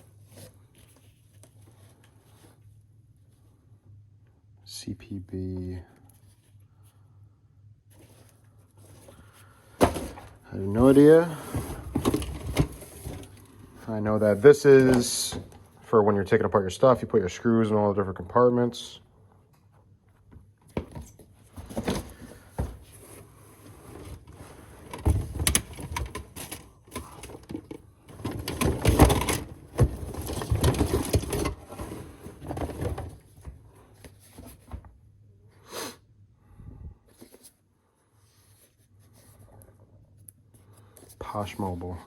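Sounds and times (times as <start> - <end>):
plastic items clicking and rattling: 9.8 - 13.5, 24.8 - 33.5
packaging rustling: 21.1 - 33.4.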